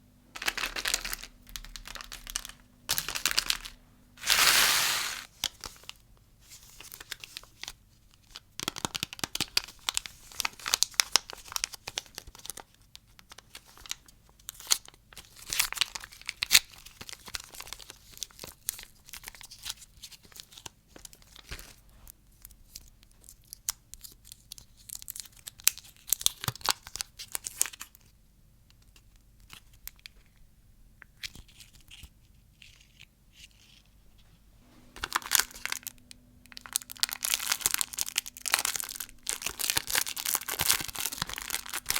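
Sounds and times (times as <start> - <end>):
candy wrappers tearing: 0.4 - 5.6, 35.0 - 41.9
wrappers crinkling and rustling: 0.4 - 6.0, 32.6 - 41.9.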